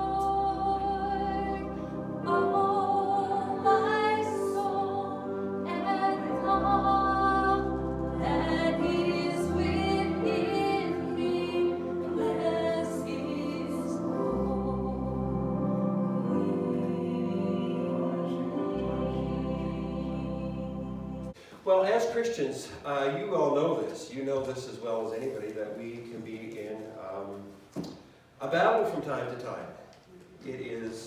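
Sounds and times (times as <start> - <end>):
person singing: 0.0 - 21.4.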